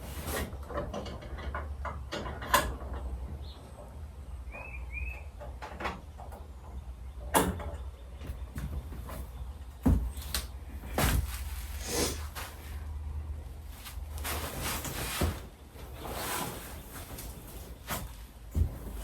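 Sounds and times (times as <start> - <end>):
dull thumps and knocks: 7.3 - 11.6, 17.0 - 19.0
scraping and rustling: 8.6 - 19.0.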